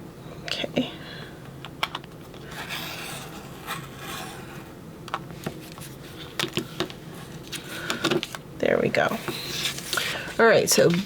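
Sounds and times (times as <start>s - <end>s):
blade scraping paper: 2.4s - 4.7s.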